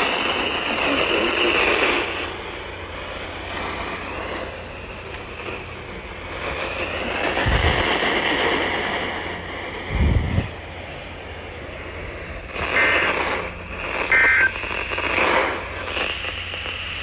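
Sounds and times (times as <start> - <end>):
radio static hiss: 0.0 - 17.0
short tone bursts: 14.0 - 14.8.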